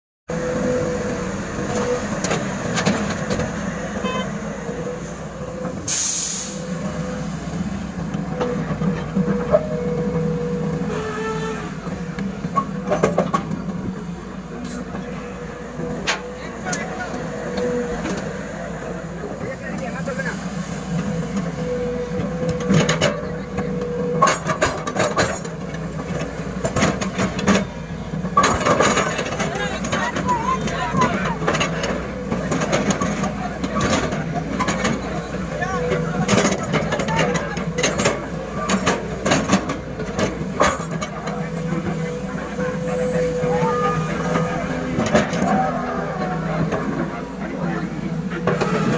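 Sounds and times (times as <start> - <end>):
excavator diesel engine: 0.3 - 48.9
steady hydraulic whine: 0.3 - 48.9
short loud hiss: 5.9 - 6.7.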